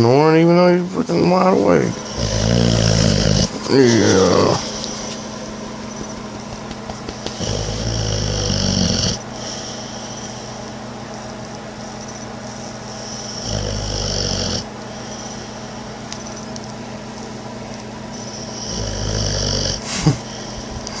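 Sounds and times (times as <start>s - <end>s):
dog snoring: 1.8s - 10.6s, 12.7s - 15.9s, 18.1s - 21.0s.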